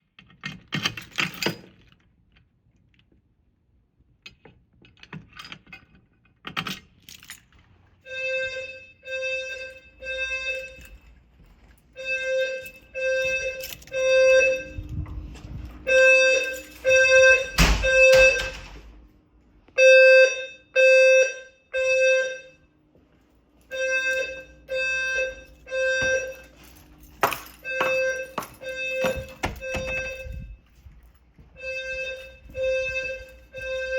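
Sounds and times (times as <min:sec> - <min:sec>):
fire alarm beeps: 0:08.0 - 0:19.0, 0:19.8 - 0:22.8, 0:23.6 - 0:33.9.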